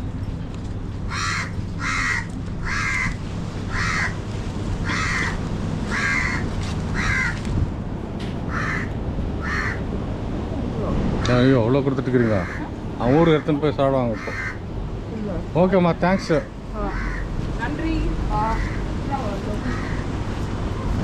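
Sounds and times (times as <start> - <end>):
low background rumble: 0.0 - 21.0
crow cawing: 1.1 - 4.2, 4.8 - 7.4, 8.5 - 9.8, 12.1 - 14.6, 16.1 - 17.3, 18.4 - 19.0, 19.6 - 20.1.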